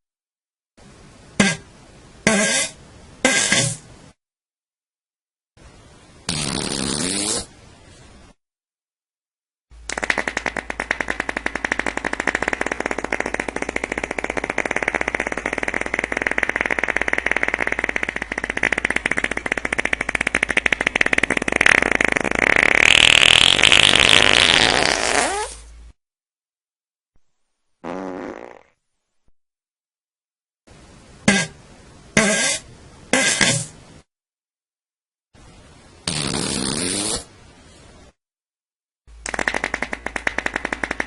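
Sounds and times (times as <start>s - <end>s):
sputtering fart sound effect: 1.4s - 3.9s, 6.3s - 7.5s, 9.8s - 25.7s, 27.8s - 28.8s, 31.2s - 31.6s, 32.2s - 33.8s, 36.0s - 37.3s, 39.2s - 41.0s.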